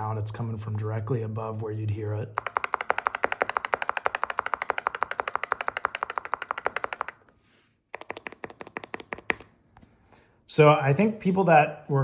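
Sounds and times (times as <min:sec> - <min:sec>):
keyboard key clicks: 0:02.4 - 0:07.2.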